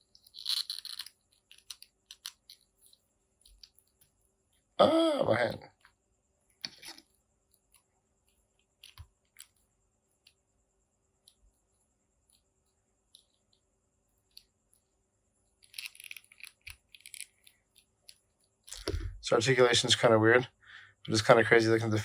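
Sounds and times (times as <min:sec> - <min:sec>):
plastic parts clicking: 0:00.1 - 0:03.8, 0:15.6 - 0:19.1.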